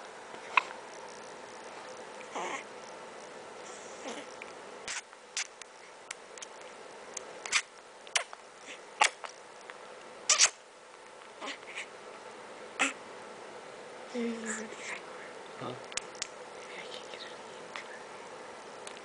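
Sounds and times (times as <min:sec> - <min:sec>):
newborn baby hiccuping: 0:10.3 - 0:10.6, 0:12.8 - 0:13.0.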